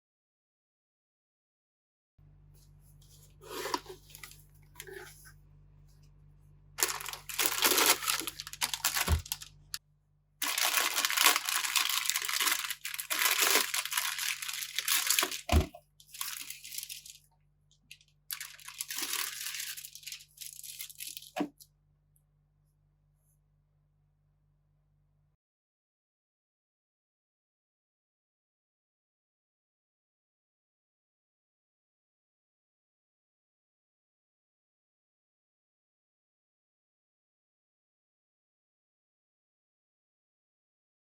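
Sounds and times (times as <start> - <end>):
packaging tearing and crinkling: 6.8 - 9.8, 10.4 - 17.2, 18.3 - 21.5.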